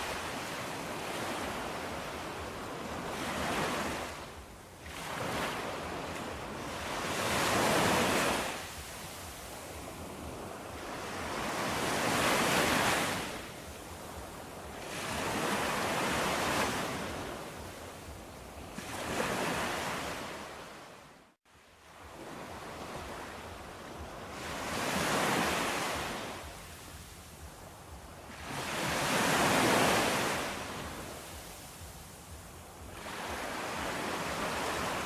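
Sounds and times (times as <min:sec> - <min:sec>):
waves rushing in: 0:00.0 - 0:35.0.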